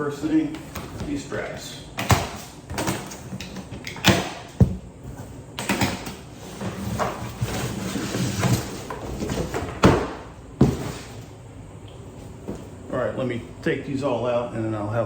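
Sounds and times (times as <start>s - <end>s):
cardboard box scraping and rustling: 6.3s - 9.8s, 10.6s - 11.2s.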